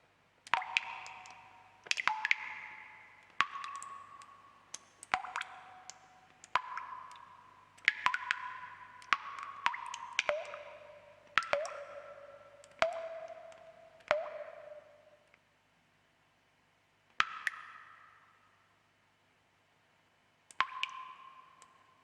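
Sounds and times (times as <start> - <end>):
water drops plinking: 0.5 - 4.4, 5.0 - 15.0.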